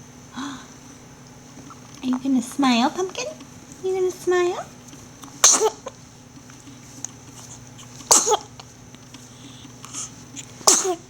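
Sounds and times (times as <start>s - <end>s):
baby sneezing: 5.4s - 6.0s, 7.8s - 8.7s, 9.9s - 11.0s.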